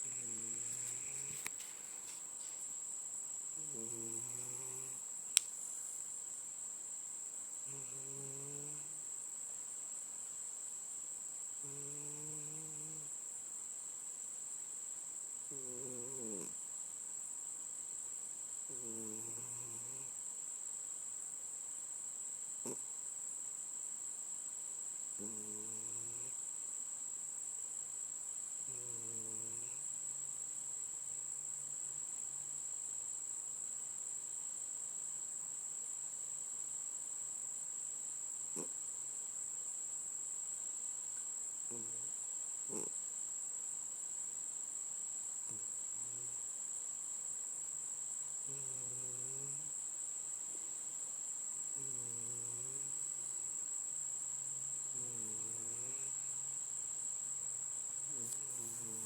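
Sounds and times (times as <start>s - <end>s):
cat snoring faintly: 0.0s - 2.6s, 3.5s - 5.1s, 7.6s - 9.0s, 11.6s - 13.2s, 15.5s - 16.6s, 18.7s - 20.2s, 22.6s - 22.8s, 25.2s - 26.4s, 28.6s - 29.9s, 38.5s - 38.8s, 41.7s - 43.0s, 45.4s - 46.5s, 48.4s - 49.9s, 51.6s - 53.4s, 54.8s - 56.6s, 58.0s - 59.0s.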